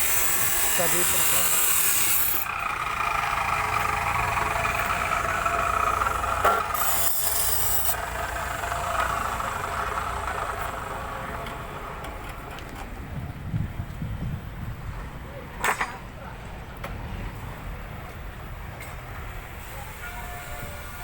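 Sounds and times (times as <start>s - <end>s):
electric hand tool rasping: 0.0s - 2.6s, 6.4s - 9.2s.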